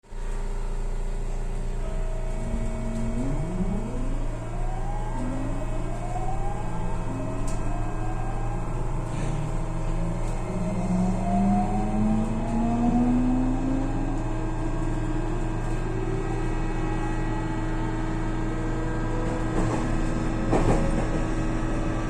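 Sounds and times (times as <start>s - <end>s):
electric train motors whining: 1.8s - 15.1s.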